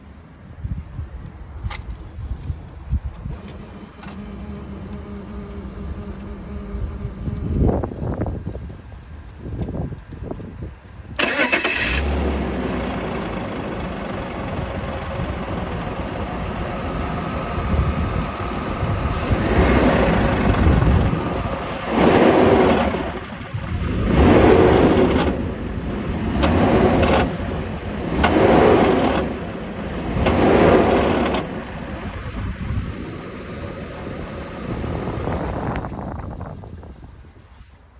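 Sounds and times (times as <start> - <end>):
car engine starting and revving: 3.4 - 8.0, 11.2 - 35.9
gearbox rattle: 17.6 - 32.6.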